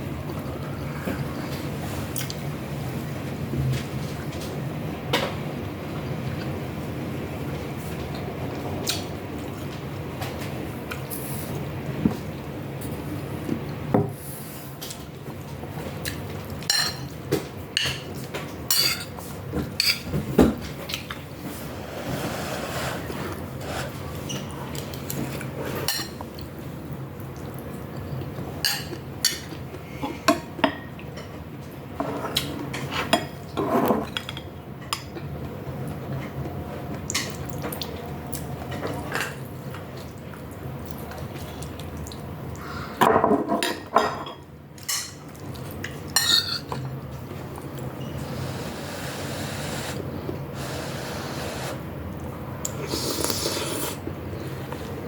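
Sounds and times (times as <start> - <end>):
wet eating noises: 35.8 - 42.9, 45.3 - 46.7, 52.0 - 55.0.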